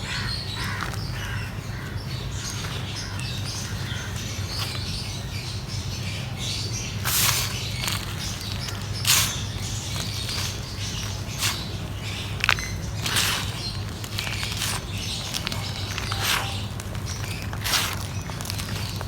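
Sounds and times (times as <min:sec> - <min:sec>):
dry mud crumbling: 0:06.9 - 0:19.0.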